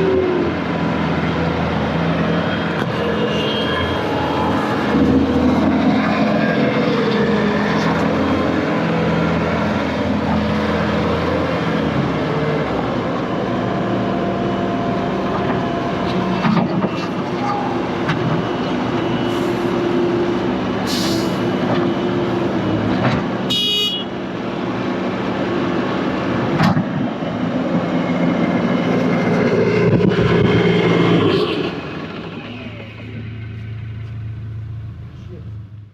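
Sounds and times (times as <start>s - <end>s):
diesel engine under load: 0.0s - 35.9s
high-pitched tone: 2.6s - 5.7s.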